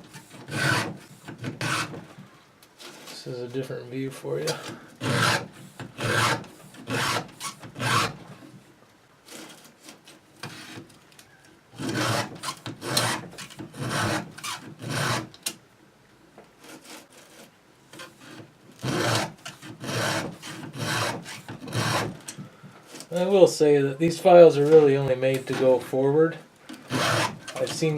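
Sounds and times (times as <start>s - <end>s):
file rasping on chainsaw chain: 0.1s - 2.0s, 4.5s - 8.2s, 11.8s - 15.3s, 16.6s - 22.2s, 26.8s - 27.9s.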